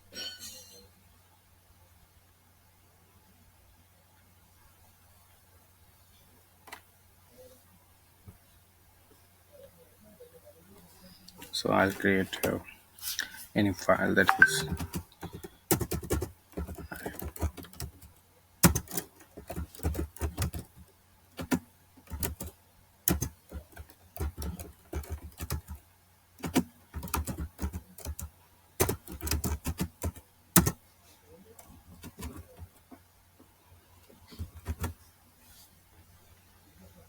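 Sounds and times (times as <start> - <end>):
computer keyboard typing: 14.2 - 20.8, 21.4 - 25.8, 26.4 - 30.8, 31.6 - 32.8, 34.4 - 34.9.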